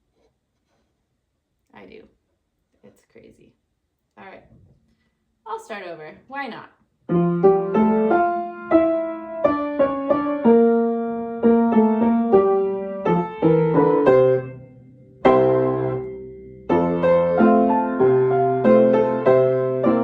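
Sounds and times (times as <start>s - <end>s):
piano notes and chords: 7.1s - 20.0s.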